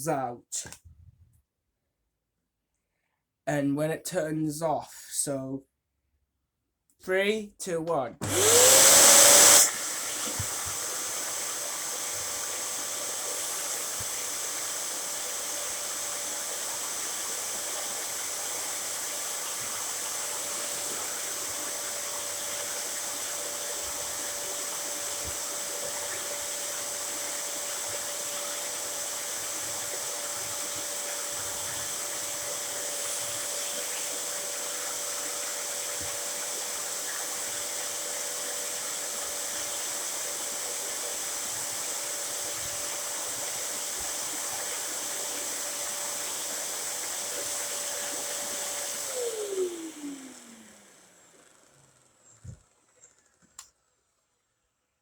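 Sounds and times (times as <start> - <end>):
vacuum cleaner running: 8.2 - 53.6.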